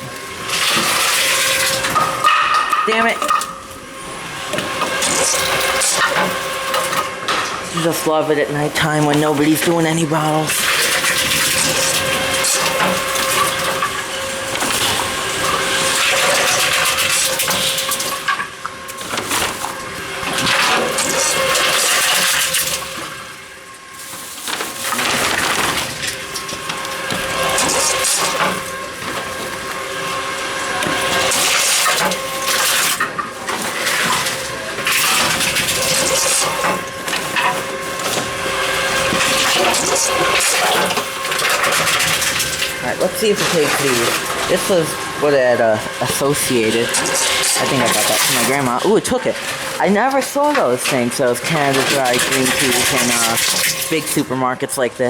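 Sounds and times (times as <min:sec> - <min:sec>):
bottles and cans rattling: 0:00.0 - 0:23.2, 0:24.0 - 0:54.9
machine hum: 0:00.0 - 0:55.0.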